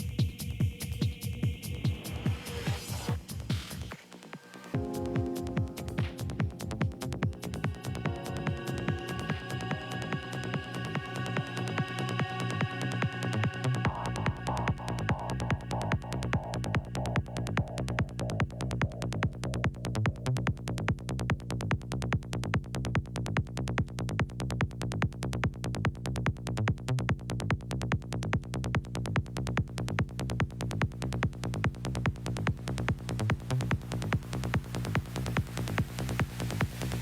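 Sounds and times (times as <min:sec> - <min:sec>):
techno music: 0:04.8 - 0:20.7.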